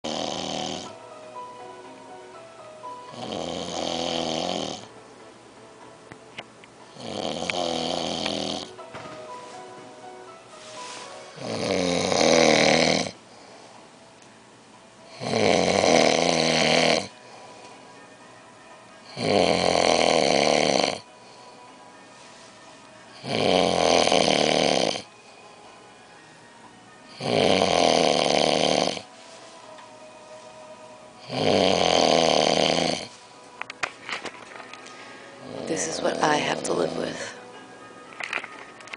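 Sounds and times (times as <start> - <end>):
person snoring: 0.0 - 1.0, 3.0 - 4.9, 6.9 - 8.8, 10.6 - 13.6, 15.1 - 17.7, 19.0 - 21.5, 23.1 - 25.1, 27.1 - 29.1, 31.2 - 33.2, 35.4 - 36.1.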